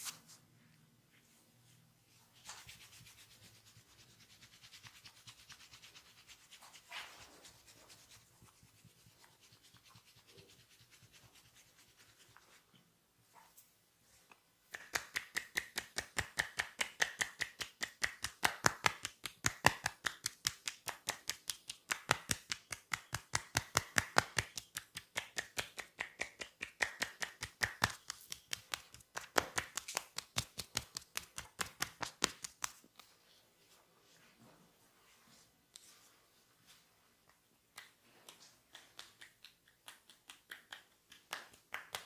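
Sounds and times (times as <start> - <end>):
hands slapping body: 14.7 - 33.1, 37.7 - 42.0.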